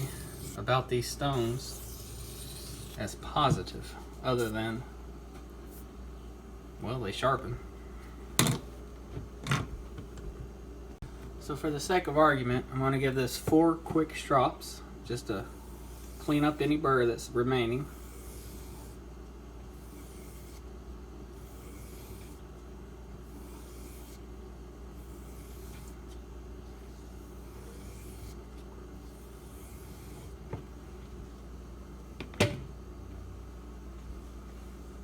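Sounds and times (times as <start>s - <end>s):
low steady hum: 0.0s - 35.0s.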